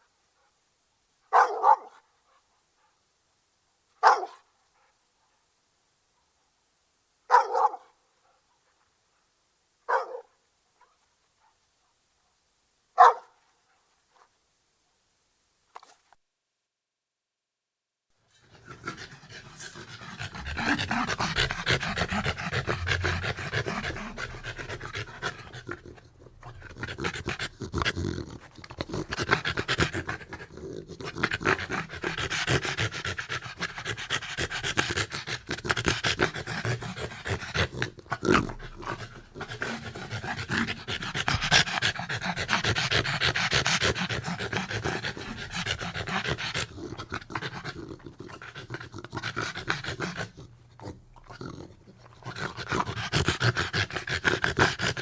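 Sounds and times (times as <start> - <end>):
dog panting heavily: 18.5 - 28.1, 28.8 - 50.4, 52.2 - 55.0.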